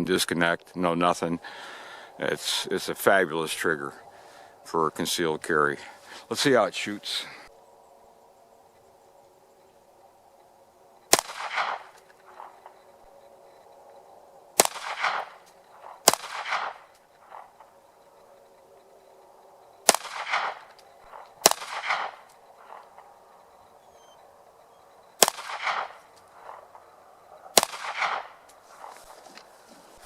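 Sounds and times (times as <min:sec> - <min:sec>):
pistol shots with echo: 0:11.1 - 0:12.5, 0:14.6 - 0:17.6, 0:19.8 - 0:23.0, 0:25.2 - 0:26.6, 0:27.5 - 0:28.4.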